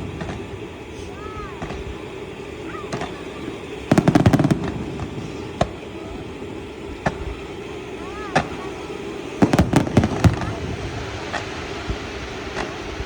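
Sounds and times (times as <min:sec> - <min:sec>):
fireworks crackling and banging: 0:00.0 - 0:13.0.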